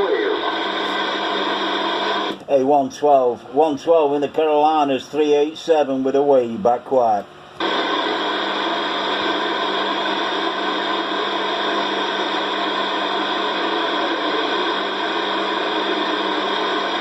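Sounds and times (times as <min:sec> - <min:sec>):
radio static: 0:00.0 - 0:02.4, 0:07.6 - 0:17.0
fixed radio tones: 0:00.0 - 0:02.5, 0:07.6 - 0:17.0.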